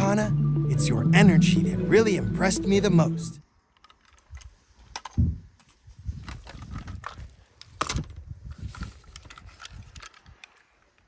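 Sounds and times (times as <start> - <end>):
plastic toys clicking and knocking: 3.7 - 5.3, 6.2 - 11.0.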